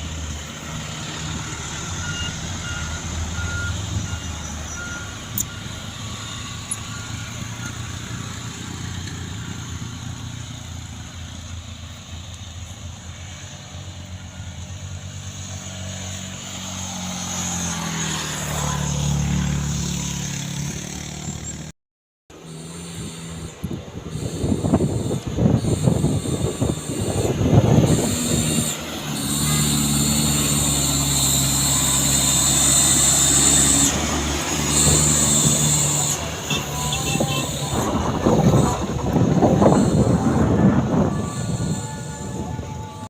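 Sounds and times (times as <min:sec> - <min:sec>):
heavy truck engine running: 0:00.0 - 0:21.7, 0:22.3 - 0:43.0
short beeps: 0:22.4 - 0:34.0, 0:34.7 - 0:43.0.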